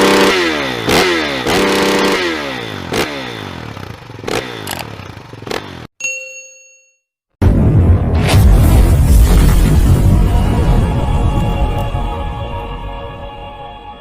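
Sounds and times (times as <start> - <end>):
dirt bike engine revving: 0.0 - 5.9
bell-like ding: 6.0 - 7.1.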